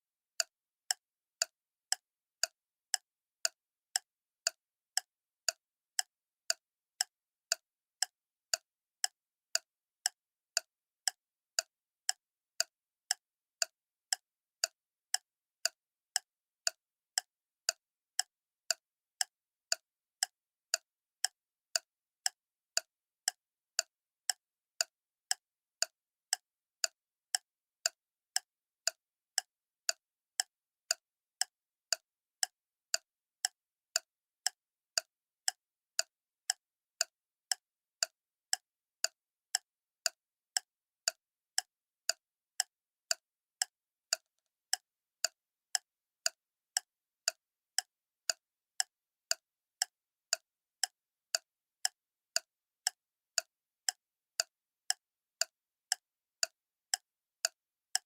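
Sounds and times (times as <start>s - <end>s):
clock ticking: 0.4s - 58.0s.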